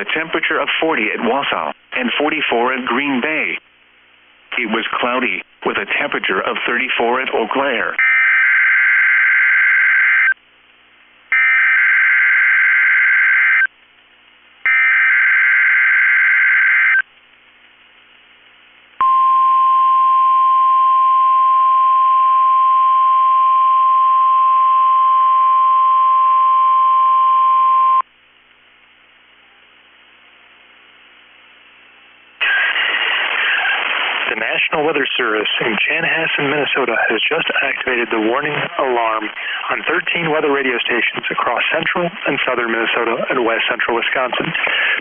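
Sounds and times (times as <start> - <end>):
steady warning alarm tone: 8.0 - 10.4, 11.3 - 13.7, 14.7 - 17.0.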